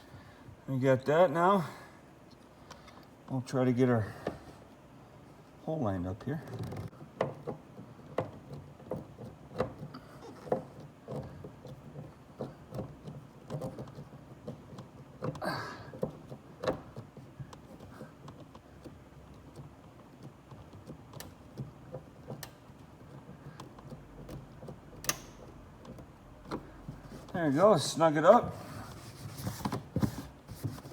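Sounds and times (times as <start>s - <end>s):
plastic panel scrape: 26.0s - 30.9s.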